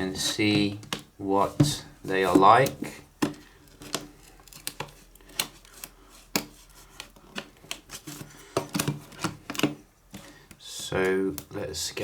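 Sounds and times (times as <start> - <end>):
packaging clicks and snips: 2.6 - 11.5.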